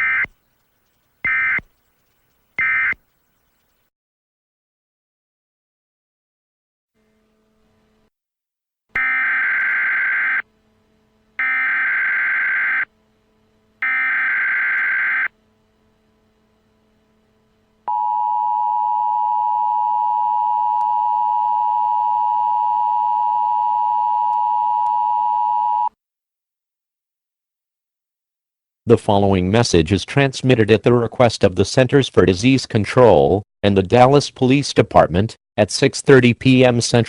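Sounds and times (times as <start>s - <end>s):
buzzing data tones: 0.0s - 3.8s, 9.0s - 10.5s, 11.4s - 12.9s, 13.8s - 15.4s.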